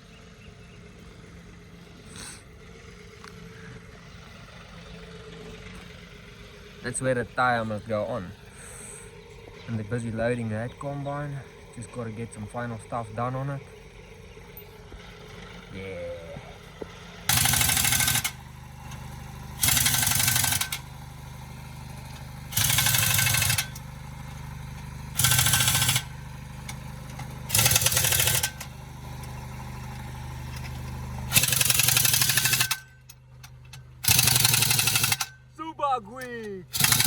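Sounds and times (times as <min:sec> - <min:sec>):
engine idling: 0:00.0 - 0:37.0
air impact wrench bursts: 0:02.1 - 0:02.5, 0:08.4 - 0:09.5, 0:16.6 - 0:35.6, 0:36.2 - 0:37.0.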